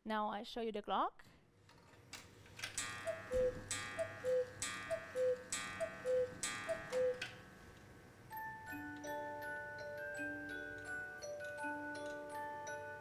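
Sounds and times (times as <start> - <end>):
music box melody: 2.8 - 7.5, 8.2 - 13.0
ringing clock strike: 2.8 - 7.5
cuckoo clock call: 2.8 - 7.6, 8.3 - 13.0.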